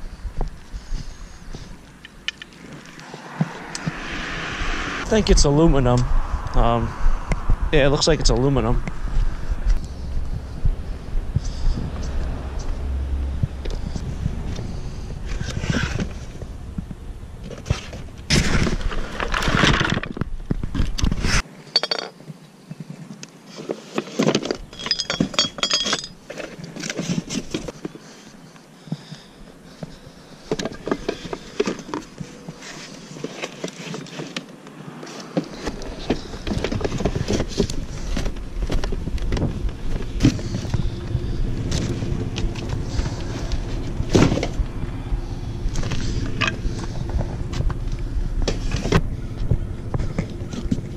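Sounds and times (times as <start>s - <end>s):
low rumble: 0.0s - 20.4s, 36.2s - 50.9s.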